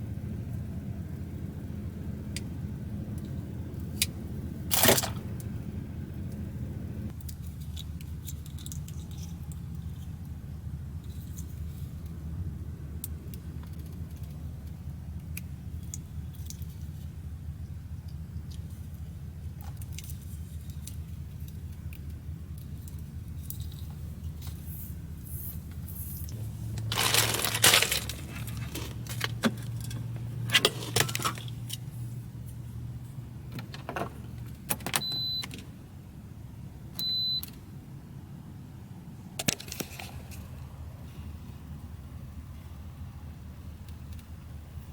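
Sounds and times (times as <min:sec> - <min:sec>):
steady low hum: 0:00.0 - 0:44.9
hands handling wire and connector: 0:07.1 - 0:10.4, 0:19.6 - 0:31.9, 0:39.4 - 0:40.6
short electronic beeps: 0:37.0 - 0:37.5.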